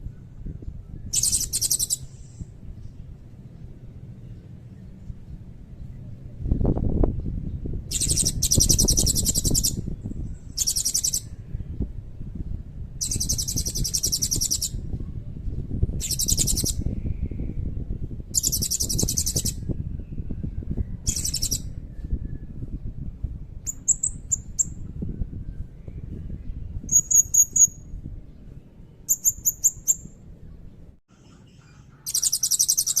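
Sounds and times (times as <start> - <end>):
steady low rumble: 0.0 - 32.0
bird short chirps: 1.1 - 2.5, 31.2 - 33.0
parrot high-pitched trills: 31.3 - 33.0.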